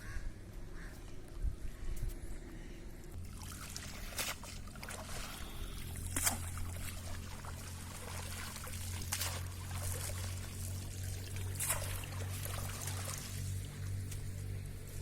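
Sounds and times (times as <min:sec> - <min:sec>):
low hum: 0:00.0 - 0:15.0
sharp water splashes: 0:03.2 - 0:13.8
water trickling and splashing: 0:03.2 - 0:15.0.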